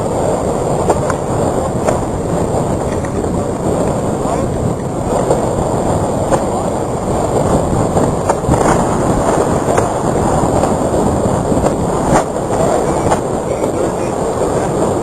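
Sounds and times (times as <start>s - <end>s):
strong wind rushing: 0.0s - 15.0s
sharp knocks: 0.8s - 2.1s, 6.3s - 6.7s, 8.2s - 9.0s.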